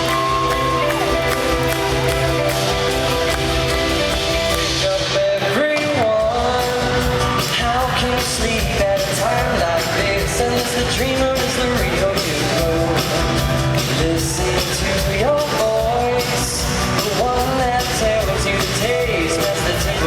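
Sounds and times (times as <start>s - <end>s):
live pop-rock band: 0.0s - 20.0s
lead vocal singing: 4.1s - 20.0s.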